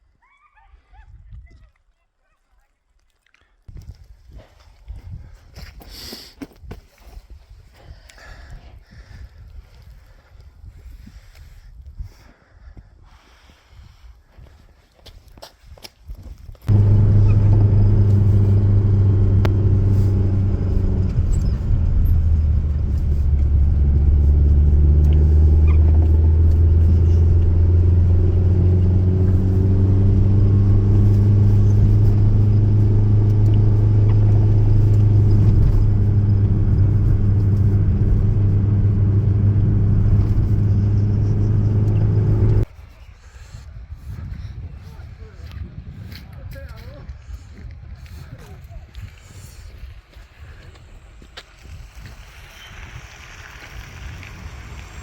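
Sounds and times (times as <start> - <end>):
engine running with low hum: 16.7 - 42.7, 51.1 - 55.0.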